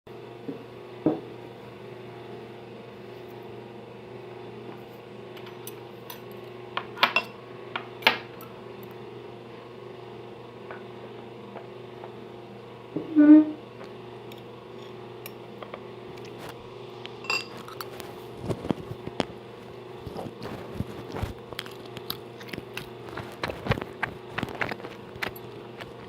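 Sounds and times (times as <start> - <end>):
steady background hum: 0.1 - 26.0
dishes and cutlery clinking: 17.2 - 17.8.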